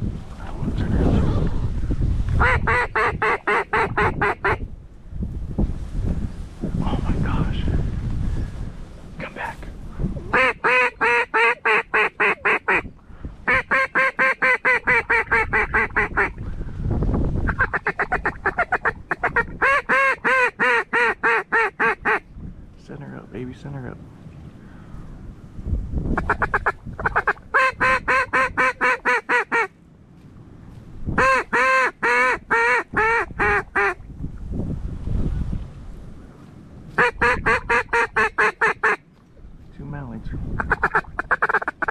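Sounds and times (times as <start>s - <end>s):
duck call quacks: 2.4s - 4.6s, 10.3s - 12.8s, 13.5s - 16.4s, 17.5s - 22.2s, 26.2s - 29.7s, 31.2s - 34.0s, 37.0s - 39.0s, 40.6s - 41.9s.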